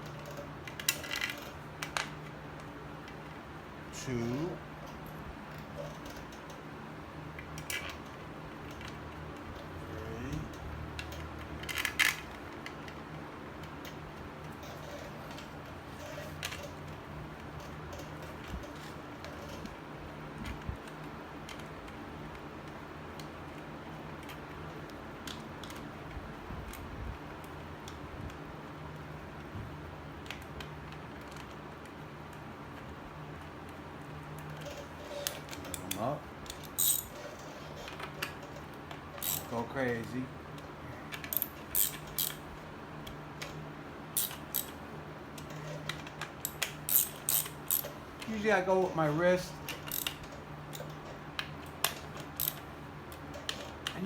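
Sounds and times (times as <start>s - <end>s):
steady low hum: 0.0s - 54.0s
hand tools clicking on bolts: 35.1s - 37.2s, 39.2s - 39.5s, 41.2s - 42.4s, 44.2s - 44.7s, 45.4s - 48.0s, 49.7s - 50.9s, 51.8s - 52.6s.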